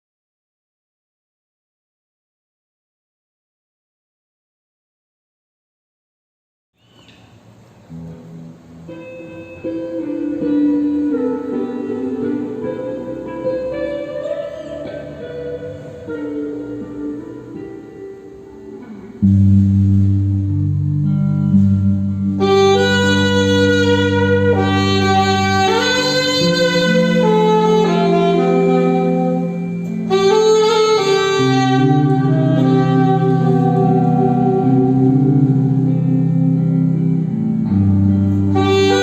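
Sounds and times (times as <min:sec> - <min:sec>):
band playing instrumental: 0:21.2 - 0:39.0.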